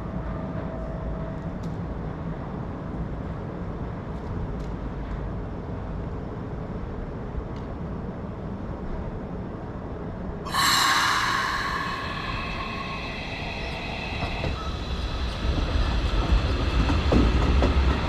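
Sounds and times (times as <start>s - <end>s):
shrill high tones: 10.5s - 15.7s.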